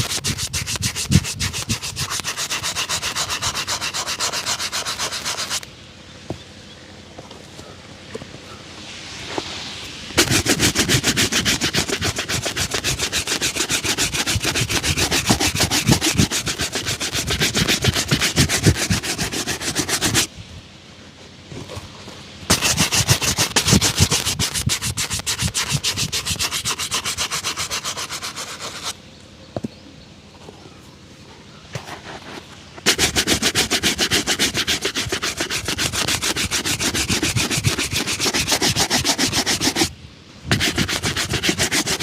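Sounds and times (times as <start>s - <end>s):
shoe being buffed by hand: 0.0s - 5.6s, 10.2s - 20.3s, 22.5s - 28.9s, 31.8s - 39.9s, 40.5s - 42.0s.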